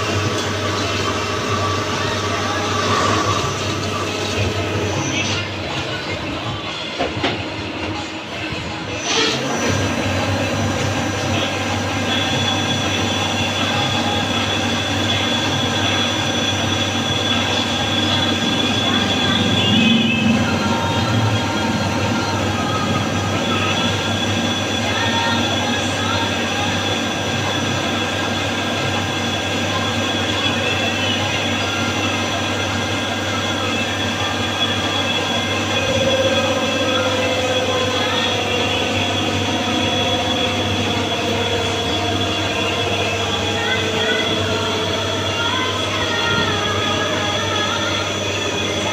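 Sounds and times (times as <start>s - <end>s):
high-pitched whine: 0.0s - 48.9s
lathe machining noise: 0.0s - 48.9s
low hum: 33.0s - 48.9s.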